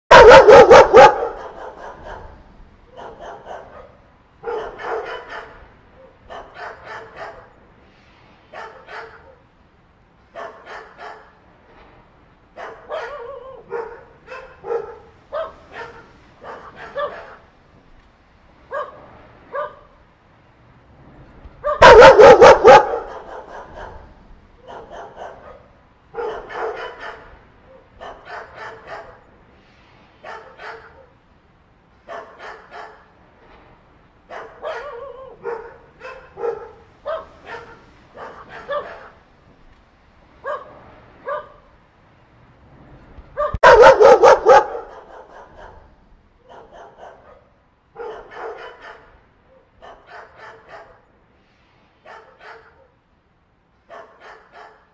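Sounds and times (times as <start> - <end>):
group of dogs barking: 0.1 - 7.5, 8.6 - 9.4, 10.4 - 11.4, 12.6 - 17.5, 21.6 - 29.2, 30.2 - 31.1, 32.1 - 33.1, 34.3 - 39.2, 43.4 - 51.0, 53.9 - 54.9.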